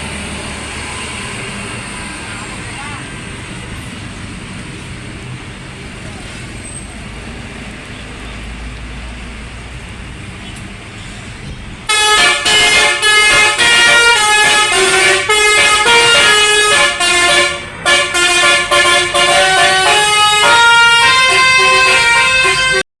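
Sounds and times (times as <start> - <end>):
low rumble of road traffic: 0.0 - 22.8
multi-tone musical bus horn: 11.9 - 22.9.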